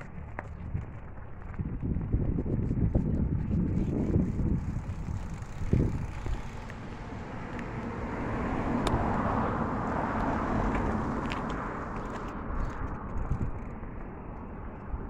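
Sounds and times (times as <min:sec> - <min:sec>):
wind rumble on microphone: 0:00.0 - 0:15.0
car passing: 0:03.5 - 0:15.0.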